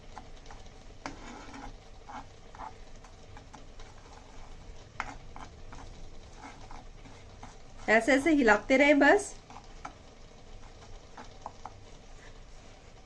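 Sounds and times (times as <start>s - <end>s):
utensil scraping a pan: 0.0s - 8.4s, 9.4s - 13.0s.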